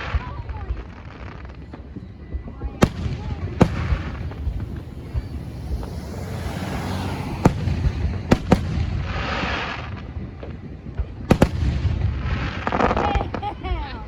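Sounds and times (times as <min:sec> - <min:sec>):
hissing crackle of firework: 0:00.0 - 0:14.0
rumble of fireworks display: 0:00.0 - 0:14.0
firework shells bursting: 0:02.8 - 0:11.9.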